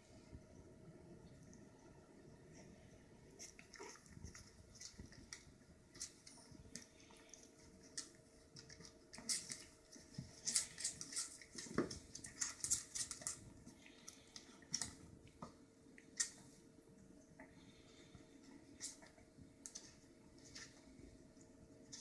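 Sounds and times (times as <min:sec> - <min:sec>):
animals scuffling: 0:03.4 - 0:15.5.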